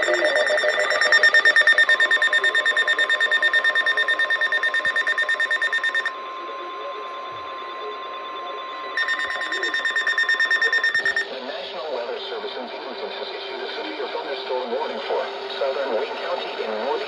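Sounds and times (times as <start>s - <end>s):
steady single alarm tone: 0.0s - 11.3s
rapid electronic alarm beeping: 0.0s - 11.4s.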